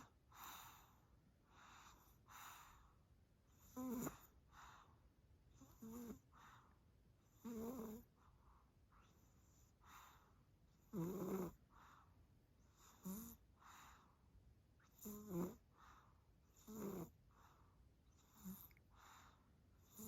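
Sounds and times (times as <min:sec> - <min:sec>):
soft breaths: 0:00.0 - 0:20.0
baby snoring: 0:03.7 - 0:04.3, 0:05.6 - 0:06.3, 0:07.4 - 0:08.1, 0:10.8 - 0:11.6, 0:12.9 - 0:13.4, 0:14.9 - 0:15.7, 0:16.6 - 0:17.2.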